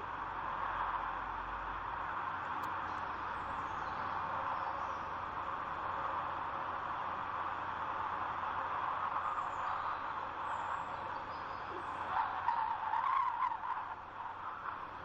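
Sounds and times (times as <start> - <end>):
steady wind: 0.0 - 15.0
faint high bird chirps: 9.2 - 12.8.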